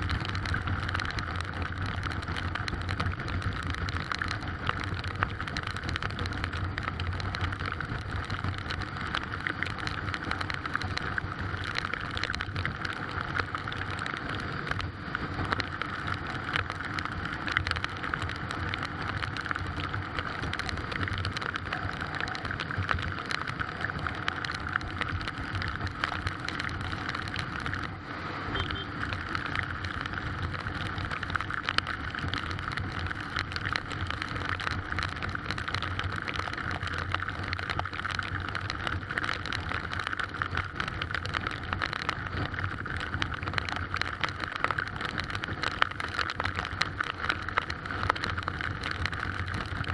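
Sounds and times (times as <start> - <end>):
heavy rain pattering: 0.0 - 49.9.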